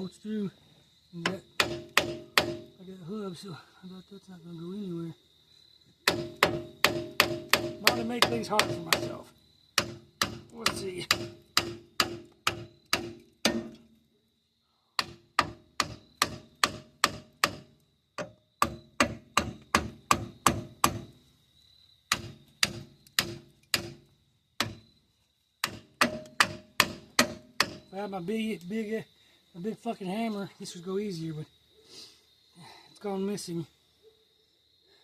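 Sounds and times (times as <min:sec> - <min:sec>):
hammer striking metal: 0:01.6 - 0:02.7, 0:06.1 - 0:09.1, 0:09.8 - 0:13.8, 0:25.6 - 0:27.8.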